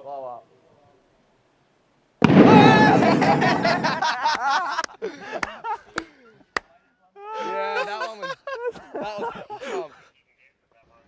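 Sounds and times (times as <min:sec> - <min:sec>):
basketball bursting with loud bang: 0:02.2 - 0:04.0
people yelling and cheering: 0:02.2 - 0:04.5.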